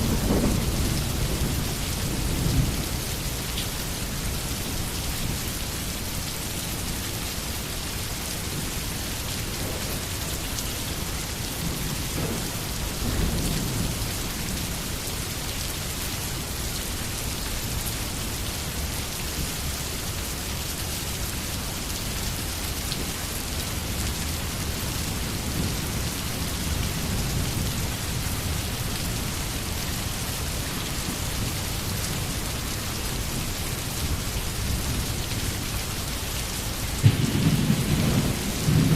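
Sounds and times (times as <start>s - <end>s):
low rumble of thunder: 0.0s - 5.4s, 9.2s - 15.5s, 23.8s - 32.4s, 36.9s - 38.9s
steady rain falling: 0.0s - 38.9s.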